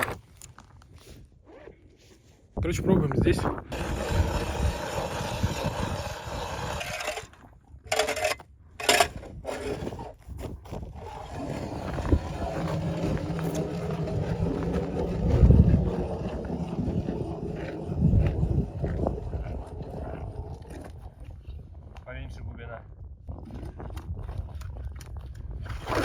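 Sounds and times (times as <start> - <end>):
wind noise on microphone: 2.5 - 26.0
small motor humming: 3.7 - 7.3, 11.2 - 20.4.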